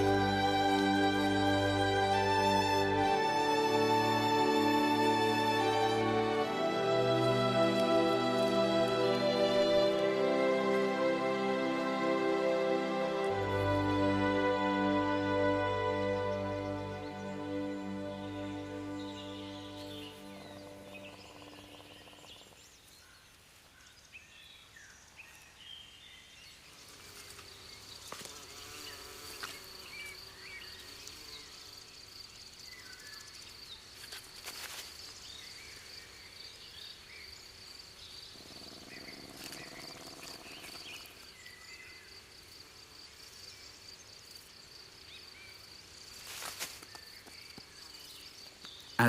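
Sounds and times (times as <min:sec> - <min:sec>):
background music: 0:00.0 - 0:22.0
insect trilling at high pitch: 0:20.2 - 0:22.6.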